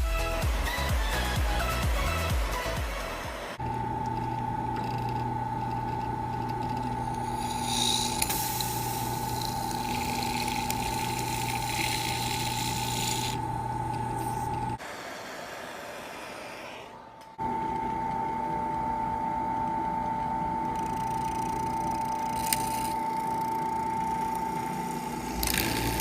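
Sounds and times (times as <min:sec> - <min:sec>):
electric drill whine: 0:03.6 - 0:19.4, 0:20.4 - 0:26.0
drill bit scraping and hissing: 0:06.6 - 0:17.4, 0:21.2 - 0:26.0.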